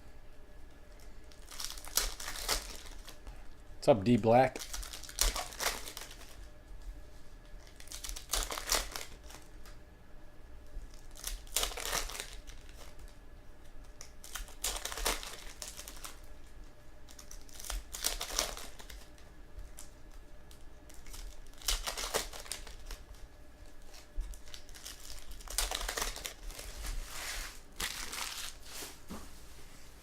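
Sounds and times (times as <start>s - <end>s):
card pack wrappers crinkling: 0.8s - 3.2s, 4.2s - 6.4s, 7.4s - 9.5s, 10.9s - 13.1s, 13.8s - 16.3s, 17.0s - 28.9s.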